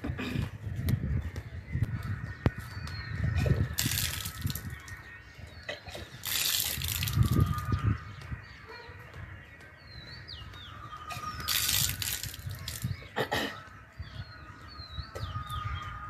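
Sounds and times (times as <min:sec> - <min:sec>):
small birds chirping: 0:00.1 - 0:16.0.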